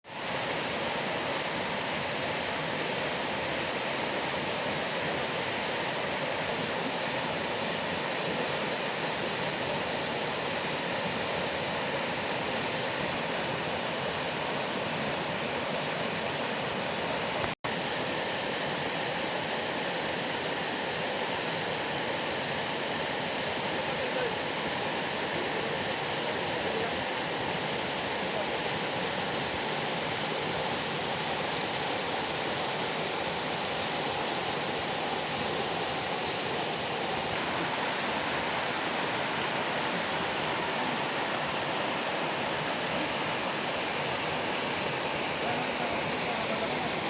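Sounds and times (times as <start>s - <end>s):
waterfall: 0.0s - 47.0s.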